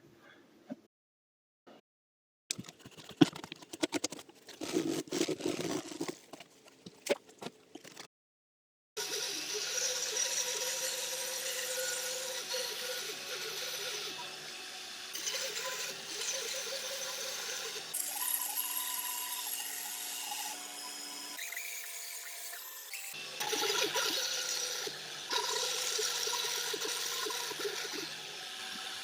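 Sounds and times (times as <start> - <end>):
power tool scraping wood: 2.5 - 8.1
wooden parts and tools clattering: 2.5 - 8.1.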